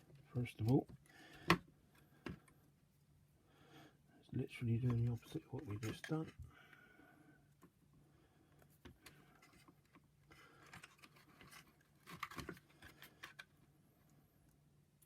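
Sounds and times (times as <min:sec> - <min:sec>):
plastic housing clicks and scratching: 0:08.6 - 0:13.6.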